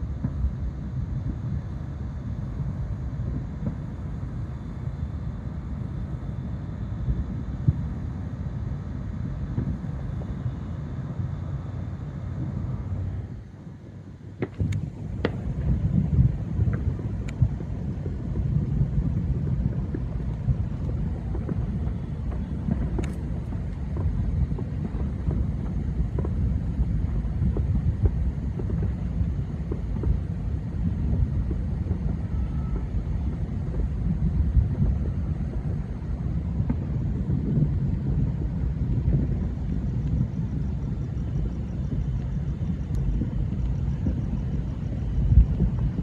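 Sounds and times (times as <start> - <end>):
distant fireworks rumble: 0.0 - 46.0
sharp firework cracks: 14.4 - 17.6, 19.6 - 35.8.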